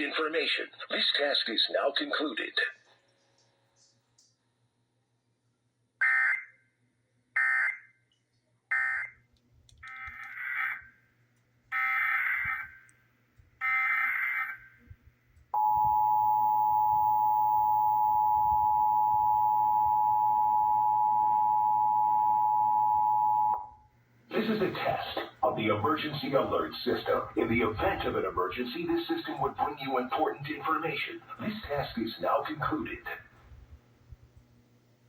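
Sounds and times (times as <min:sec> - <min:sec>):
two-tone attention signal: 0:15.6 - 0:23.7.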